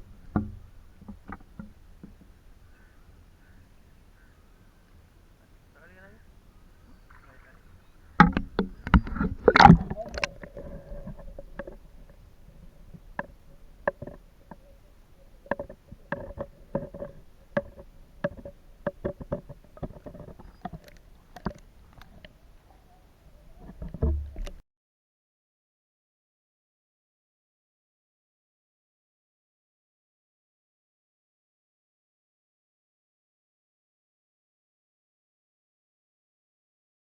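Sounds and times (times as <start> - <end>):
faint steady hum: 0.0 - 24.6
sharp clicks and knocks: 8.2 - 12.2, 12.9 - 14.7, 15.4 - 22.3, 23.6 - 24.6.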